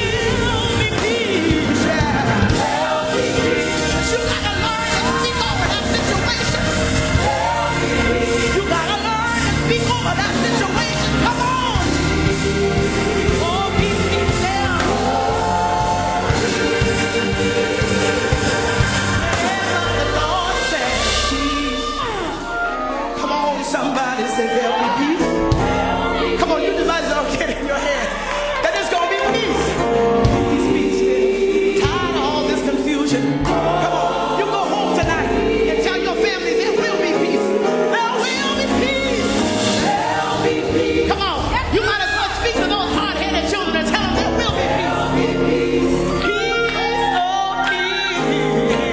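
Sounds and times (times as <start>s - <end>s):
band with bass and cymbals: 0.0s - 23.0s
full band with steady bass: 0.0s - 48.9s
gospel singing: 0.0s - 48.9s.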